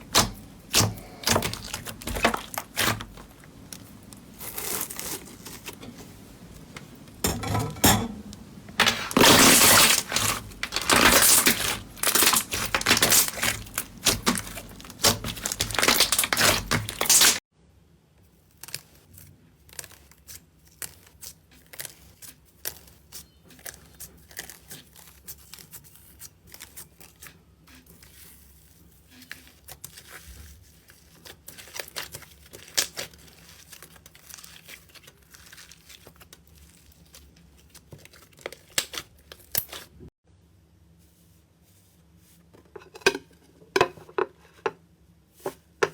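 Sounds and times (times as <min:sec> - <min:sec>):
slime crackling and popping: 0:00.0 - 0:05.5, 0:08.9 - 0:17.4, 0:29.1 - 0:39.9
slime squishing: 0:00.0 - 0:06.7, 0:08.8 - 0:17.4, 0:18.4 - 0:40.0.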